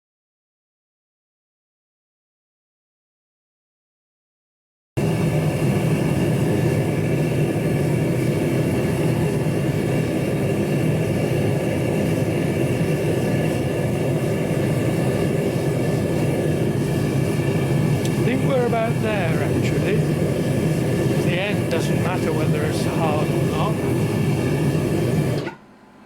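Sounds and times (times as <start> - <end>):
gas burner running: 5.0 - 25.7.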